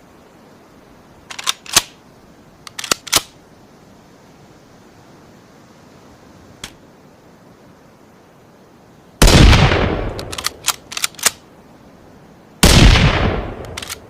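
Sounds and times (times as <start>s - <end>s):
rifle bolt clicking: 1.3s - 2.0s, 2.7s - 3.4s, 10.1s - 11.4s, 13.6s - 14.0s.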